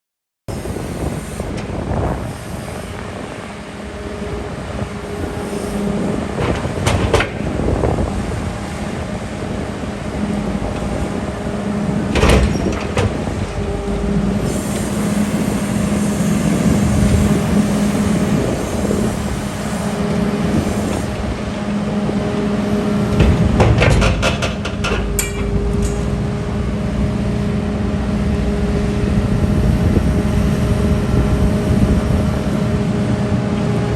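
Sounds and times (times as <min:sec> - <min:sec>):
diesel engine running: 0:00.5 - 0:33.9.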